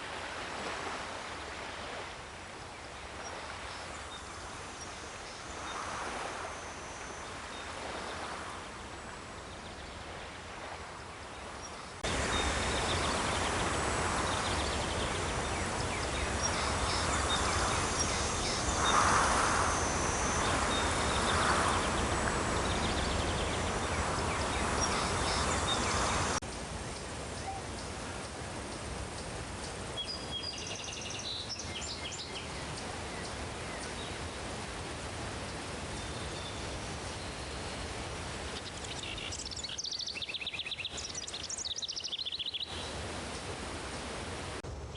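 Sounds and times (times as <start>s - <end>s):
steady background hiss: 0.0s - 44.9s
insects: 3.2s - 8.8s, 11.6s - 27.5s
birds chirping: 11.4s - 44.2s.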